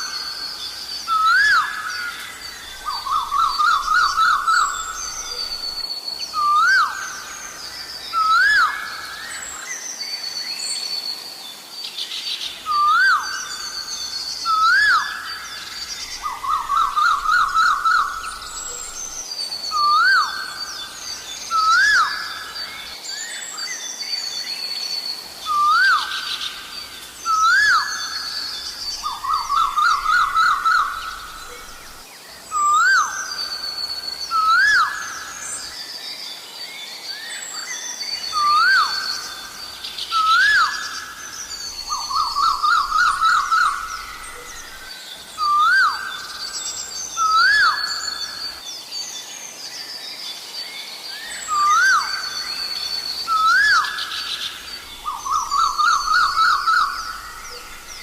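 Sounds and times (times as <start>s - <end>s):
small birds chirping: 0.0s - 58.0s
koel whistled calls: 32.5s - 35.7s, 38.2s - 48.6s, 51.5s - 58.0s.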